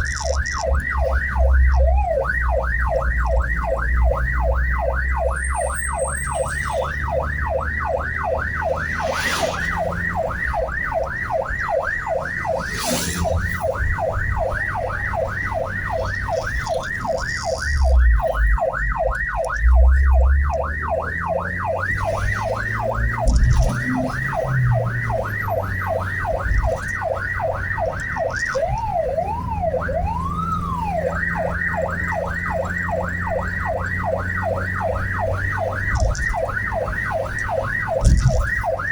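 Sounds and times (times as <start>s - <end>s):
electronic siren yelping and wailing: 0.0s - 38.9s
engine and road rumble: 0.0s - 38.9s
low thumps: 37.9s - 38.7s.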